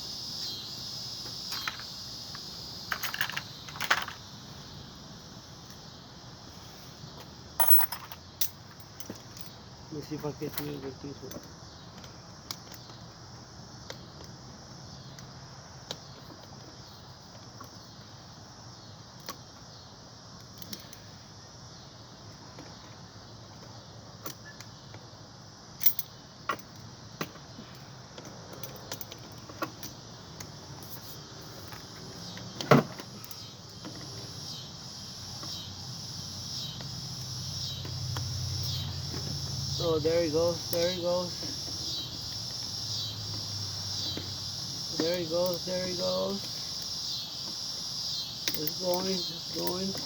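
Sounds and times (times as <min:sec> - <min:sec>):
hand tools clicking on metal: 0:48.4 - 0:50.0.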